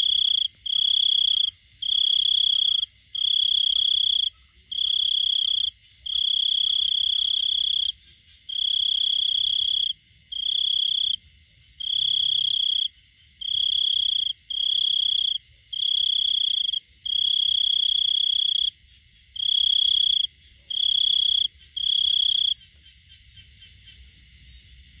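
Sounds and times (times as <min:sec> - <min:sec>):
cricket trilling: 0:00.0 - 0:25.0.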